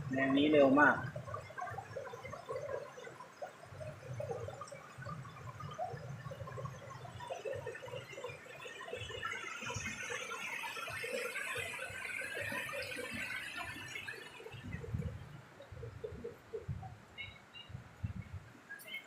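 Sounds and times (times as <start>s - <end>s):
stream babbling over rocks: 7.5s - 14.8s.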